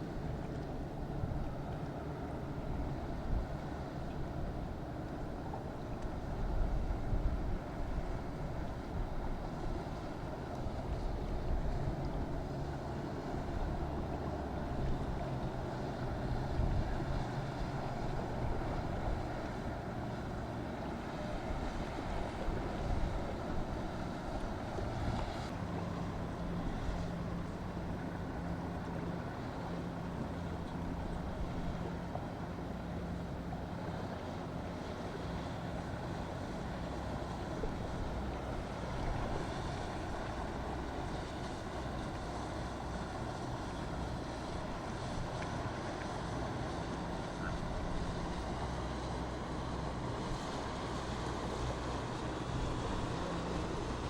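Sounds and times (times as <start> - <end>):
boat engines running: 0.0 - 54.0
surf: 0.0 - 54.0
wind noise on microphone: 6.2 - 9.8.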